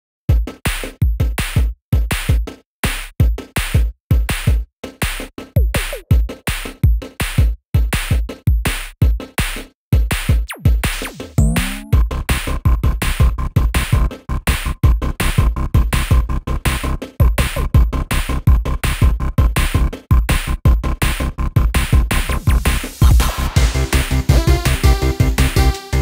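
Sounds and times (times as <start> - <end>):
electronic music with drum beat: 0.3 - 26.0
synth sweep: 11.4 - 12.0.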